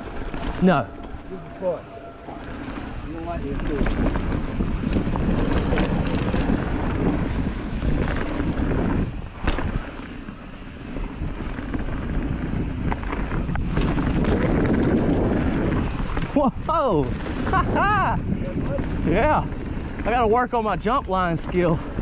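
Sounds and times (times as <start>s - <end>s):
tyre and trail rumble: 0.0s - 22.0s
wind rushing over microphone: 0.0s - 22.0s.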